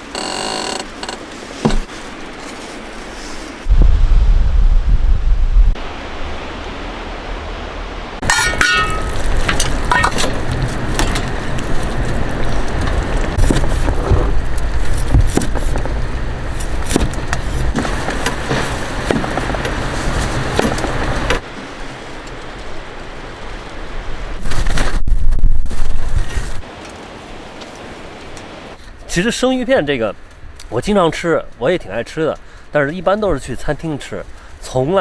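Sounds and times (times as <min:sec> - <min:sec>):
wind buffeting microphone: 0:03.6 - 0:29.1.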